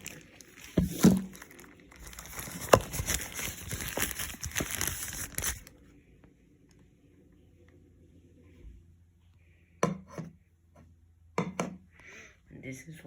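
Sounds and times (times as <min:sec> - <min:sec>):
packaging crinkling and rustling: 0:00.0 - 0:05.8.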